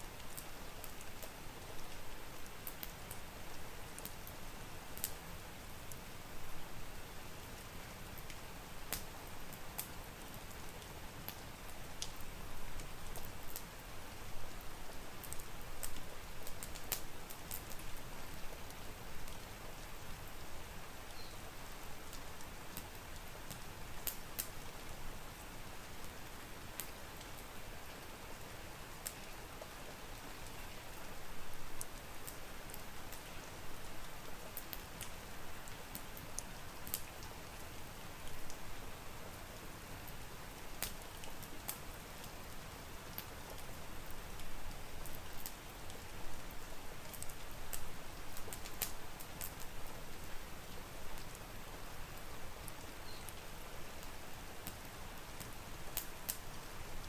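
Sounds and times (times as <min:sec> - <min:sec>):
steady rain: 0:00.0 - 0:57.0
wood fire crackling: 0:00.0 - 0:57.0.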